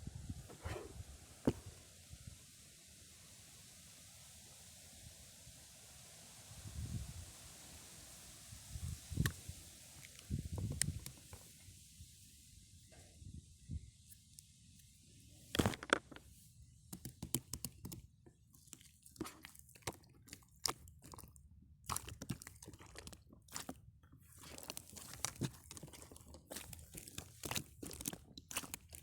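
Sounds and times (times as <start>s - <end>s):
crunching and crinkling clicks: 15.5s - 16.3s, 21.9s - 29.0s.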